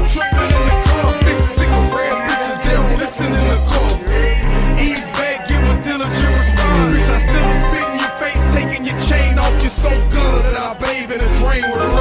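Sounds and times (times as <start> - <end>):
hip hop beat: 0.0 - 12.0
deep bass notes: 5.5 - 7.8.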